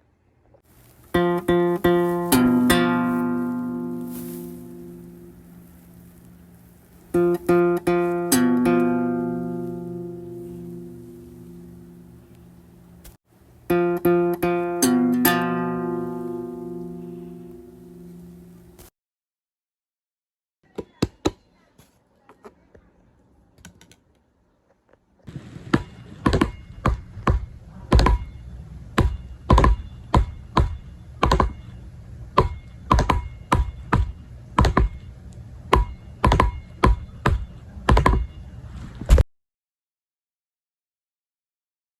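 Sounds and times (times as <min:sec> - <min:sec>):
low steady hum: 0:00.0 - 0:18.9.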